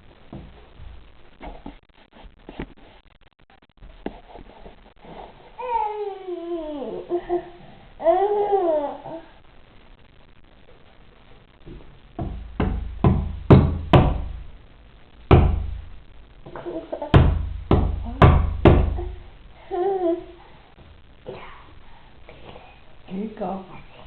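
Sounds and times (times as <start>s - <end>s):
baby babbling: 5.6s - 9.3s, 19.0s - 20.4s
baby banging on hard surface: 17.1s - 19.1s.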